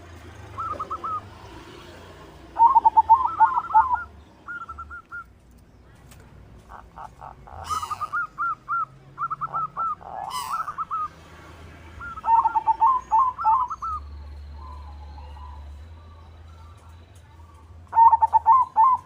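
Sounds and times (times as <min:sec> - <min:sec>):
dove cooing: 0:00.0 - 0:01.4, 0:02.5 - 0:05.2, 0:06.7 - 0:11.1, 0:12.0 - 0:14.0, 0:17.9 - 0:19.0.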